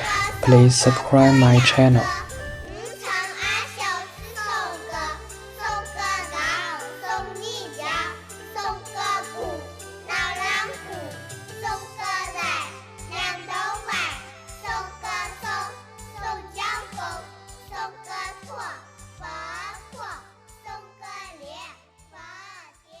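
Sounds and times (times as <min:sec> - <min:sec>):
bass line: 0:00.0 - 0:02.7
person singing: 0:00.0 - 0:02.7.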